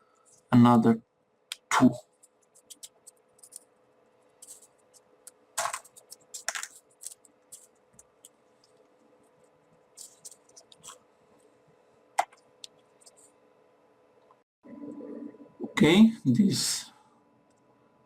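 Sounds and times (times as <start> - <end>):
paper pieces clicking: 2.5 - 3.7, 4.4 - 8.4.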